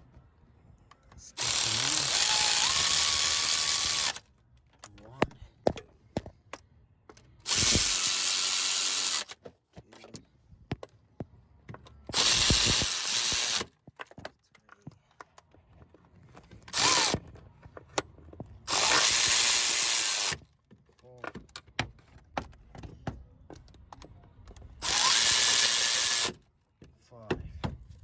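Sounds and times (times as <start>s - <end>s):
power driver running: 1.4s - 4.2s, 7.5s - 9.4s, 12.1s - 13.7s, 16.7s - 17.2s, 18.7s - 20.4s, 24.8s - 26.3s.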